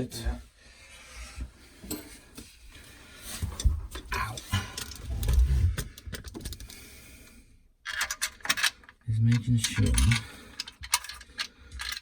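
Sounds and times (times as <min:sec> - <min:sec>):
plastic and wire clicks and scrapes: 0:07.9 - 0:12.0.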